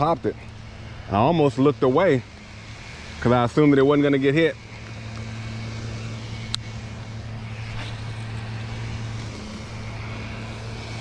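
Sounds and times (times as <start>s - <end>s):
low motor-like hum: 0.0s - 11.0s.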